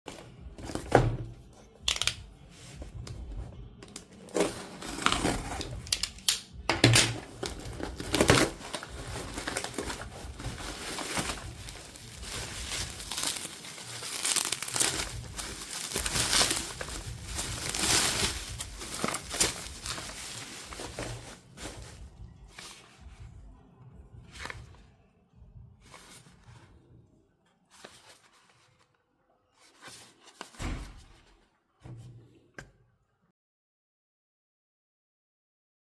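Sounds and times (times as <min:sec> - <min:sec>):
packaging crinkling: 0:03.9 - 0:22.0.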